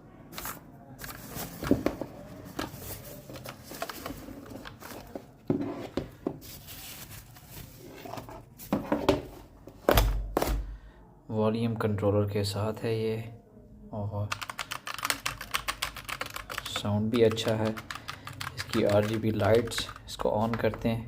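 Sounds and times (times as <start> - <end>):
rustling packaging: 0.4 - 5.5, 6.4 - 8.9.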